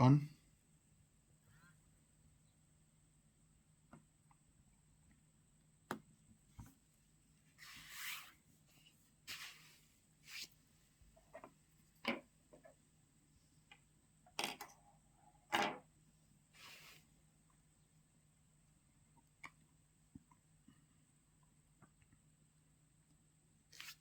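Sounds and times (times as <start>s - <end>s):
hands rustling on phone: 7.5s - 12.2s.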